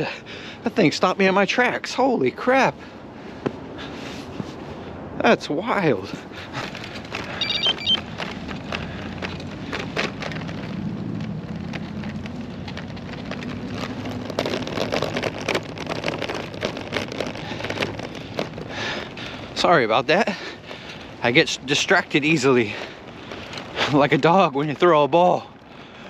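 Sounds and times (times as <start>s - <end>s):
river ice crackling: 5.7s - 26.0s.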